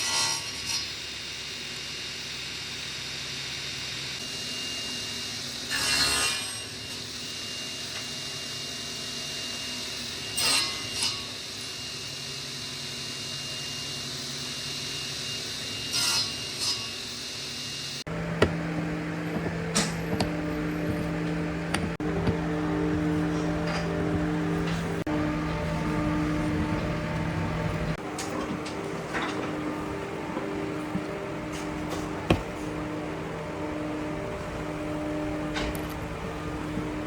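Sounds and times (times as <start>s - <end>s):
power saw cutting wood: 15.6s - 37.0s.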